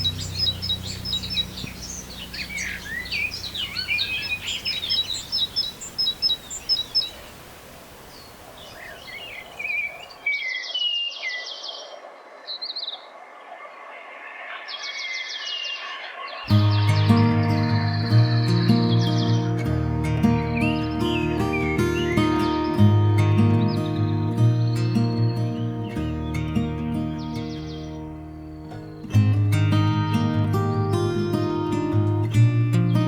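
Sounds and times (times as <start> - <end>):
bird trills: 0.0 - 7.4, 14.5 - 33.0
songbirds singing and chirping: 0.0 - 33.0.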